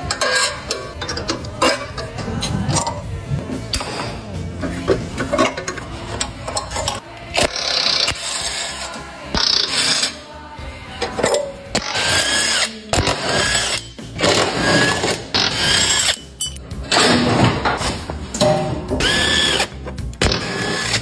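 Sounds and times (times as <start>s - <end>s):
handheld power tool whining: 11.8s - 16.6s, 19.0s - 21.0s.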